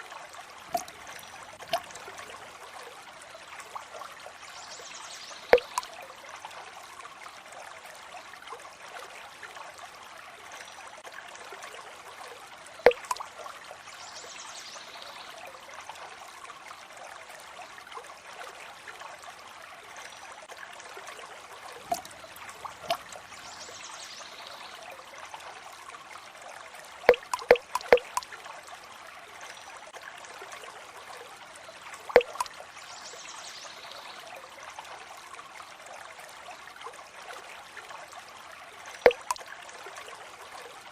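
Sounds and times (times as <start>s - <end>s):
water trickling: 0.0s - 40.9s
water drips plinking: 0.6s - 2.7s, 5.4s - 6.0s, 12.8s - 13.4s, 21.8s - 23.9s, 27.0s - 28.4s, 32.0s - 32.6s, 39.0s - 39.5s.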